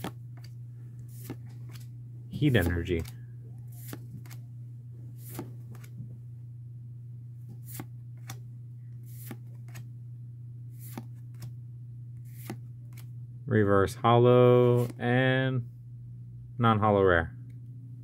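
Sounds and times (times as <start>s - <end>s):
paper cards flicking: 0.0s - 1.9s, 2.5s - 4.4s, 5.2s - 6.0s, 7.5s - 8.4s, 9.0s - 9.8s, 10.8s - 11.5s, 12.2s - 13.1s
steady low hum: 0.0s - 18.0s.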